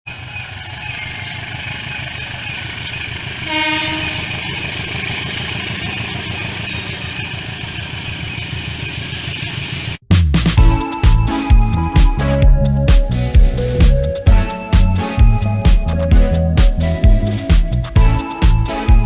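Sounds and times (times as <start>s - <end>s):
diesel locomotive engine rumbling: 0.1s - 9.4s, 10.6s - 19.0s
train horn blast: 3.4s - 4.4s.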